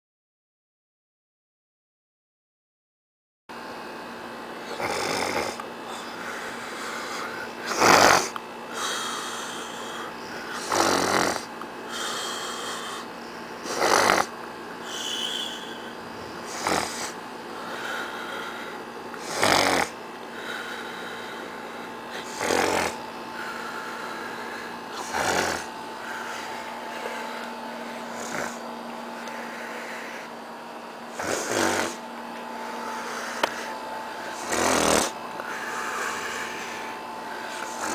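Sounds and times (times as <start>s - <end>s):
man snoring: 4.6s - 28.7s, 31.1s - 32.0s, 32.8s - 37.9s
quiet breathing: 8.7s - 10.7s, 11.9s - 13.3s, 14.8s - 18.9s, 20.3s - 22.5s, 23.3s - 30.5s, 32.6s - 34.7s, 35.4s - 37.9s.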